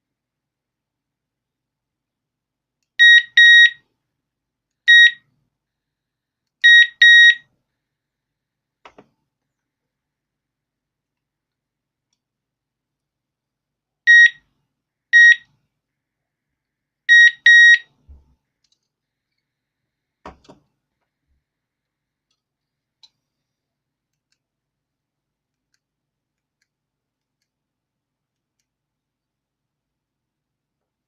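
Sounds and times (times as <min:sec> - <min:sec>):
alarm unit beeping: 0:03.0 - 0:03.8, 0:04.9 - 0:05.2, 0:06.6 - 0:07.4, 0:14.1 - 0:14.4, 0:15.2 - 0:15.4, 0:17.1 - 0:17.9.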